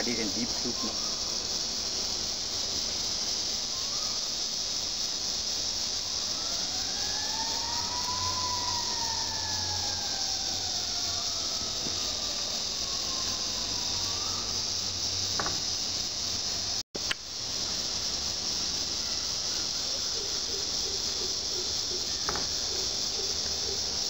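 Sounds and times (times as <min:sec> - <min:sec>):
distant wail: 0:00.0 - 0:04.8, 0:05.9 - 0:16.8
crickets chirping: 0:00.0 - 0:24.0.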